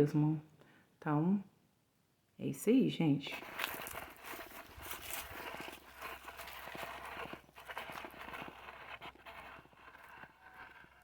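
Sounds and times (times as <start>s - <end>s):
footsteps crunching dry leaves: 3.3s - 9.9s.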